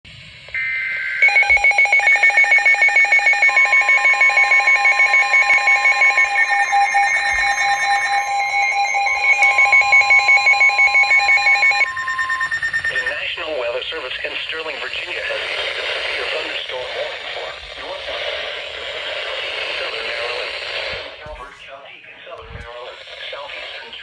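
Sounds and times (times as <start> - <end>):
warbling data tones: 0.2 - 21.6
steady single-pitch alert tone: 0.6 - 15.1
electronic alarm beeping rapidly: 0.6 - 20.8.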